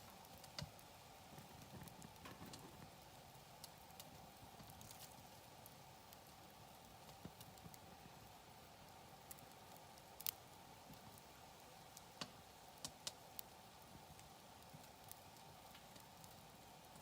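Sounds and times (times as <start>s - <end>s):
burning wood popping and snapping: 0.0s - 17.0s
wood fire crackling: 0.0s - 17.0s.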